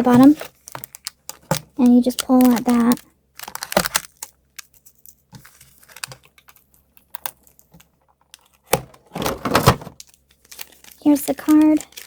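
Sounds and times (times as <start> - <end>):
cardboard rustle: 0.0 - 1.6, 8.4 - 12.0
cardboard packaging clicks and taps: 0.1 - 4.3, 5.3 - 9.1.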